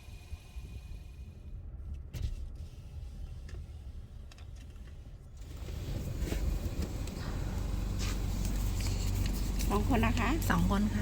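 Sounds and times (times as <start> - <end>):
car engine idling: 5.0 - 11.0.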